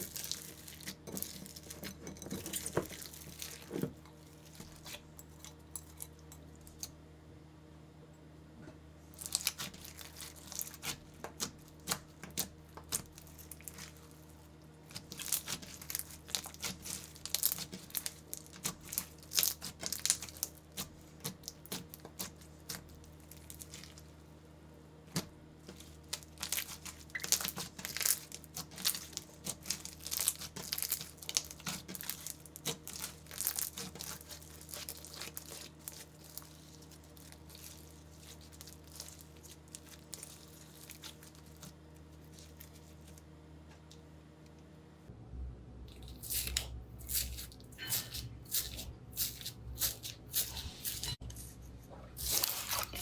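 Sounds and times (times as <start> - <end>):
slime crackling by hand: 0.0 - 1.8, 9.2 - 24.1, 25.1 - 43.2
faint steady hum: 0.0 - 53.0.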